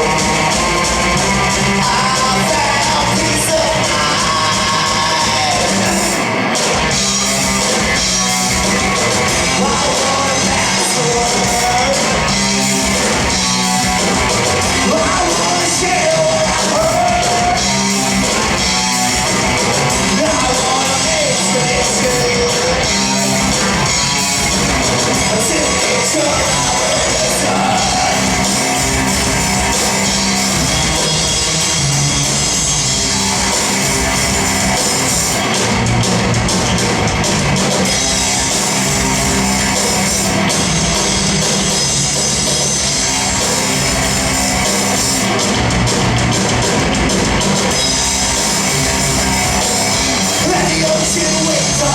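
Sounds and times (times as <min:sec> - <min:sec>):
live rock band playing: 0:00.0 - 0:51.9
man singing: 0:01.7 - 0:06.3, 0:09.5 - 0:12.4, 0:14.8 - 0:17.7, 0:20.0 - 0:23.4, 0:25.2 - 0:28.4, 0:50.3 - 0:51.9.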